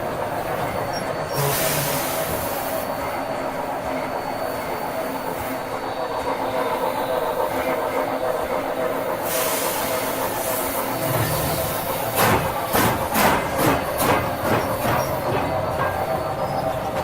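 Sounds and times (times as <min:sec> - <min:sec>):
train rumbling on rails: 0:00.0 - 0:17.0
hiss: 0:01.3 - 0:15.3.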